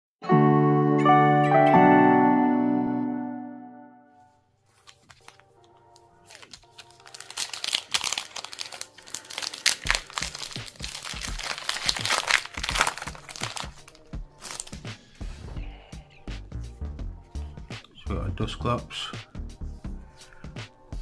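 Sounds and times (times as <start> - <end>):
foil wrapper tearing and crinkling: 4.7 - 14.9
background music with steady beat: 8.8 - 21.0.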